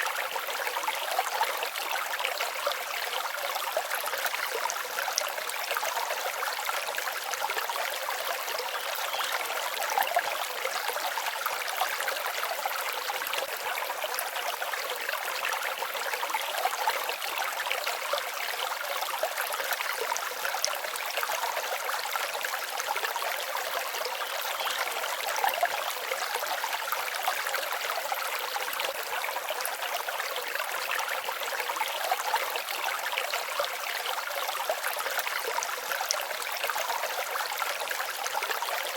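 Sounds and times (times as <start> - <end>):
stream babbling: 0.0 - 38.9.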